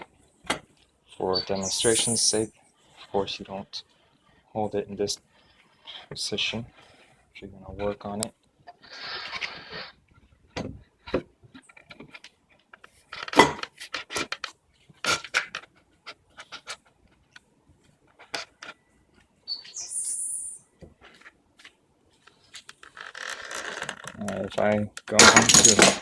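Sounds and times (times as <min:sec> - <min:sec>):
brief high-pitched squeak: 0:01.3 - 0:02.4, 0:19.5 - 0:20.7
wooden knocks and clunks: 0:10.5 - 0:12.3.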